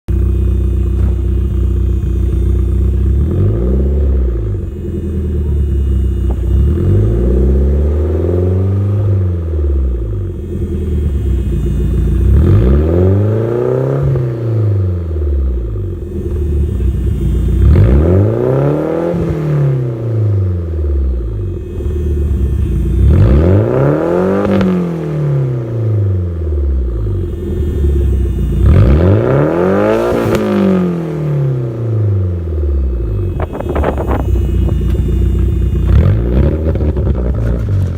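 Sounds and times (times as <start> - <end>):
car engine idling and revving: 0.1 - 37.9
fuel pump whine: 0.1 - 37.9.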